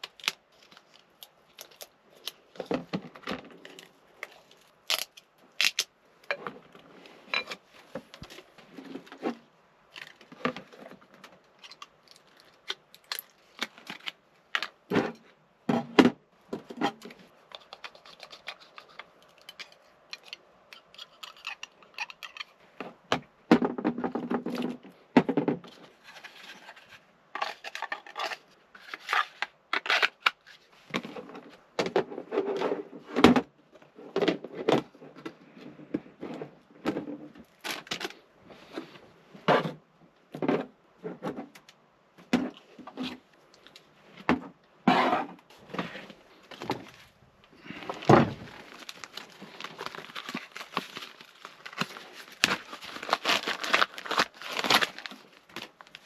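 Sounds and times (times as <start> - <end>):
handling clicks knocks and scrapes: 6.3 - 23.0, 23.7 - 50.8.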